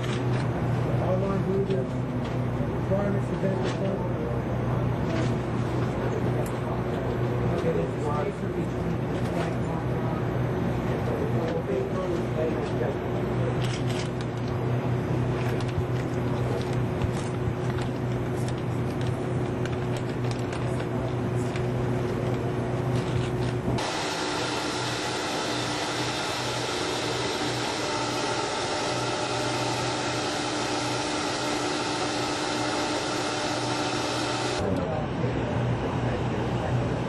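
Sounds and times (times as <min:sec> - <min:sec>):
machinery hum: 0:00.0 - 0:37.0
fan-like hiss with whining tones: 0:23.6 - 0:36.9.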